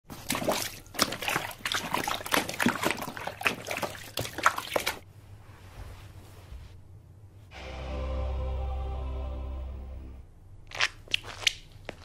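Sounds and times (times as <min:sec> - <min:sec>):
water splashing and sloshing: 0:00.1 - 0:05.1.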